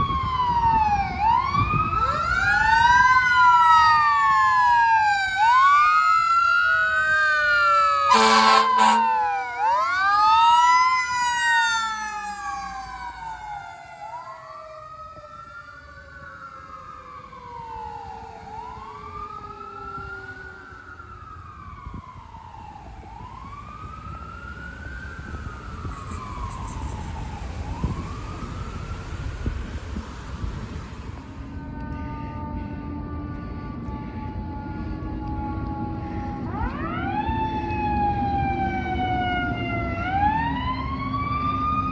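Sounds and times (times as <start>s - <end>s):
fire truck siren wailing: 0.0s - 41.9s
lower siren tone gliding downward: 0.0s - 41.9s
air horn blast: 8.1s - 9.4s.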